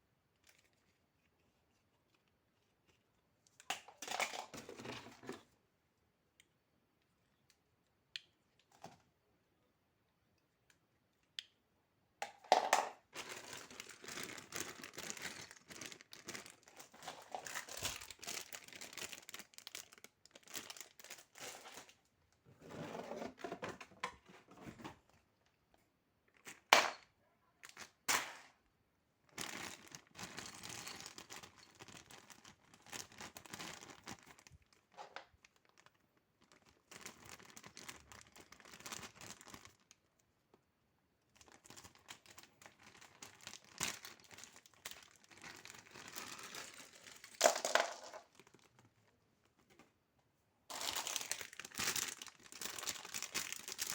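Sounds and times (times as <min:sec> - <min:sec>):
packaging crinkling and rustling: 0:12.5 - 0:22.0, 0:29.3 - 0:40.1, 0:41.3 - 0:49.8, 0:50.7 - 0:53.9.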